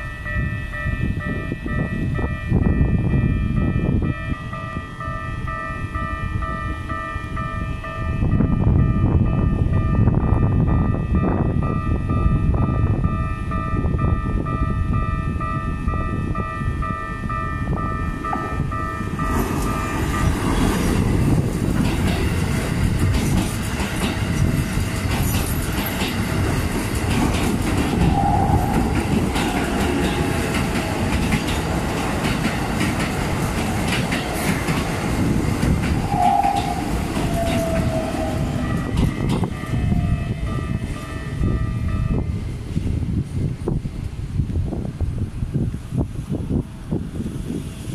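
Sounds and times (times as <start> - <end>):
crossing warning bell tones: 0.0 - 23.2, 23.9 - 42.6
train wheels clattering: 18.3 - 39.9.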